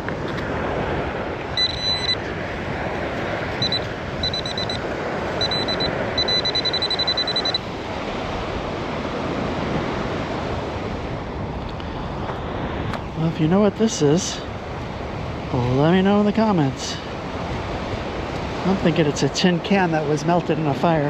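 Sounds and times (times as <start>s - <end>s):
surf: 0.0s - 21.0s
wind: 0.0s - 21.0s
metal detector beeping: 1.6s - 2.3s, 3.6s - 4.8s, 5.4s - 7.7s.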